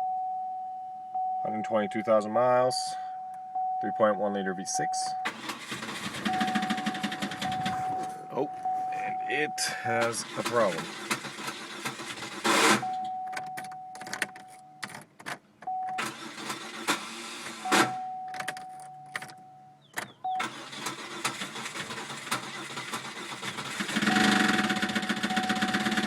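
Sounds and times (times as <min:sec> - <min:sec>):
warning chime: 0:00.0 - 0:10.7, 0:12.8 - 0:14.8, 0:17.6 - 0:20.4
car engine starting: 0:05.2 - 0:13.2, 0:15.8 - 0:26.0.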